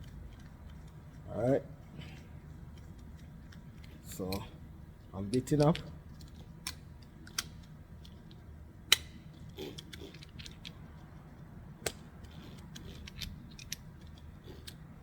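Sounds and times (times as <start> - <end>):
low steady hum: 0.0 - 15.0
light metallic clicks and taps: 5.3 - 7.7.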